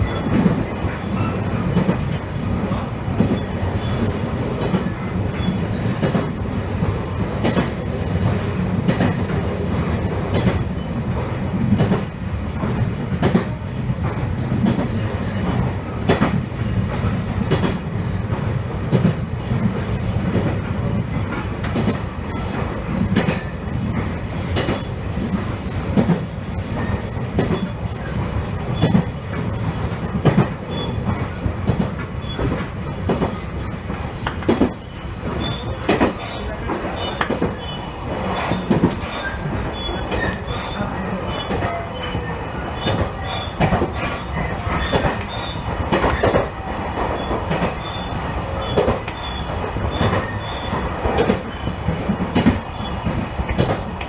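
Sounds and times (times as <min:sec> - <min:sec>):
train running hum: 0:00.0 - 0:54.0
wheels clacking over rail joints: 0:11.7 - 0:39.4.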